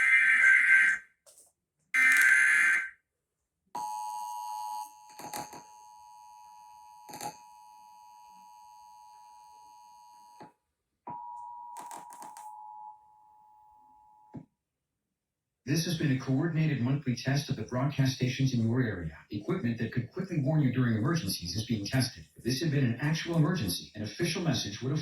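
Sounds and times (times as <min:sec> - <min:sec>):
screeching digital data burst: 0:02.0 - 0:02.9
two-tone alert signal: 0:02.0 - 0:02.9.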